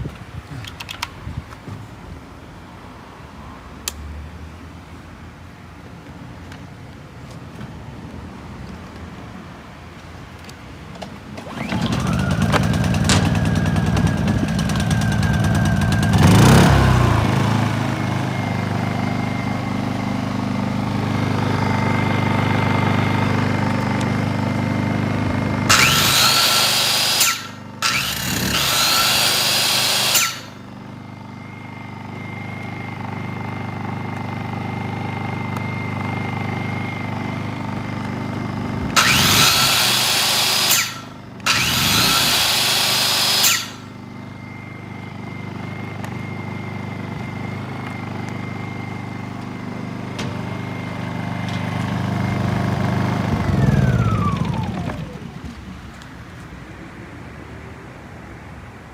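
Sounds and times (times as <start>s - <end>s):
generator engine running: 11.1s - 56.0s
power tool whine: 11.4s - 55.6s.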